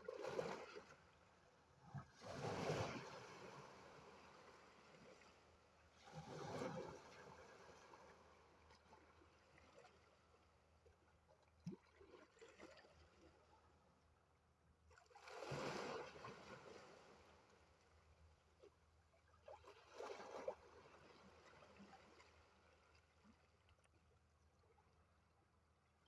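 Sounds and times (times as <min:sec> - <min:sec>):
sea waves washing in: 0:02.1 - 0:08.2.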